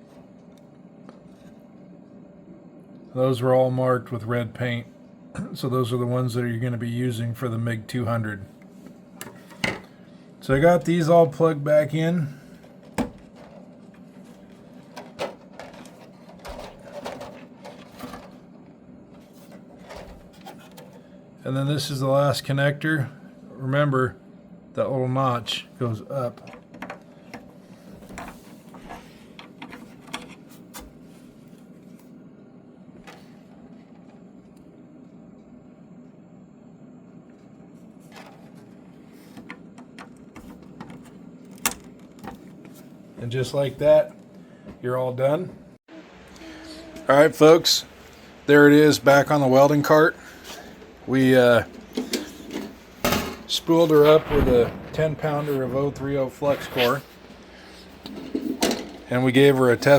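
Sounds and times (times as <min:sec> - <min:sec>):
steady low hum: 0:00.0 - 0:59.9
wires rustling: 0:12.5 - 0:18.5.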